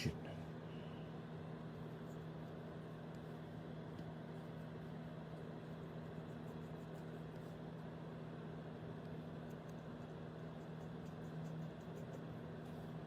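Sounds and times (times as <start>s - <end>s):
low machine hum: 0.0s - 13.0s.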